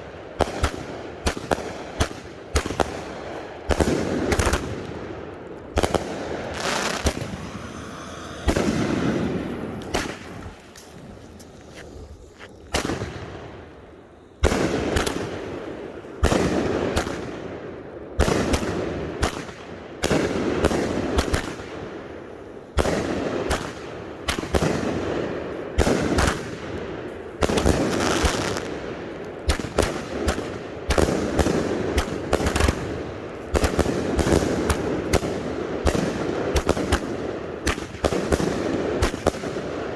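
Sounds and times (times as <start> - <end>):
fireworks launching and bursting: 0.0 - 17.4, 27.4 - 39.8.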